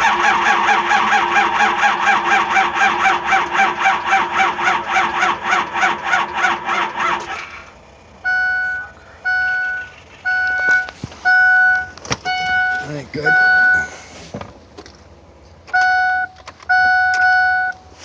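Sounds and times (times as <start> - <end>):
engine cranking on starter: 0.0 - 7.8
warning chime beeping: 8.2 - 14.1.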